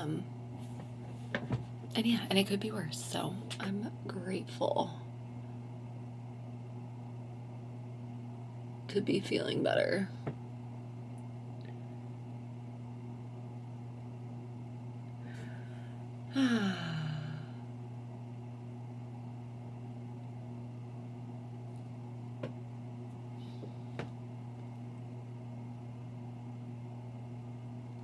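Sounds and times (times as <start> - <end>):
steady low hum: 0.0 - 28.0
woman sighing: 15.3 - 17.6.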